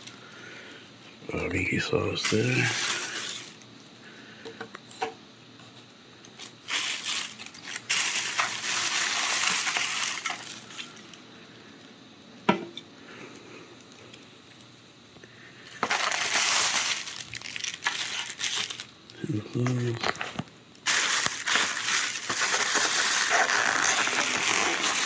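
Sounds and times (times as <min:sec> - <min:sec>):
food packaging rustling: 0:01.4 - 0:03.7, 0:06.4 - 0:11.2, 0:15.7 - 0:25.0.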